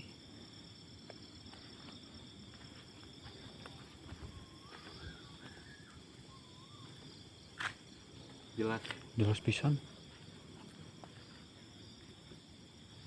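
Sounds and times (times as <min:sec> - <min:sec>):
crickets and insects shrilling: 0:00.0 - 0:13.0
wavering whistle-like call: 0:04.2 - 0:07.0.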